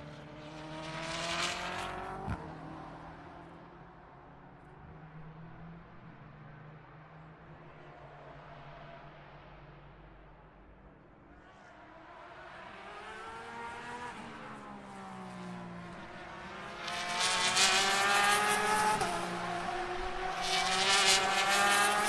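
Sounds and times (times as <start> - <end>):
race car accelerating through gears: 0.0 - 3.4, 11.4 - 22.0.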